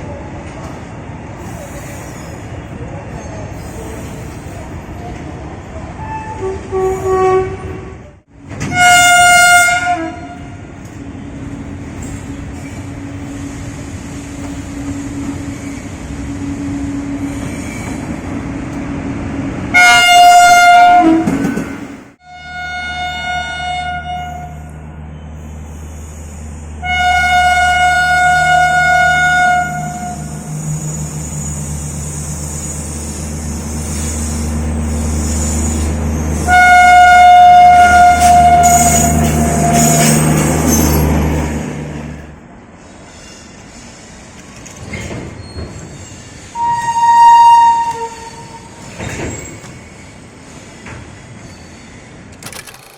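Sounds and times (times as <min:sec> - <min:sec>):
running train rumble: 0:00.0 - 0:52.9
locomotive horn blasts: 0:06.2 - 0:08.0, 0:08.6 - 0:10.5, 0:19.7 - 0:21.4, 0:22.2 - 0:24.8, 0:26.8 - 0:30.4, 0:36.4 - 0:40.1, 0:46.6 - 0:48.7.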